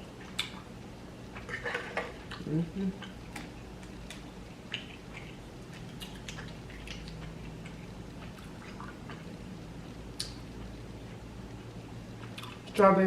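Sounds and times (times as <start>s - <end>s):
faint steady hum: 0.0s - 13.0s
chewing sticky rice cakes: 0.1s - 12.8s
mouth clicks and smacks: 2.3s - 9.2s, 10.2s - 10.4s.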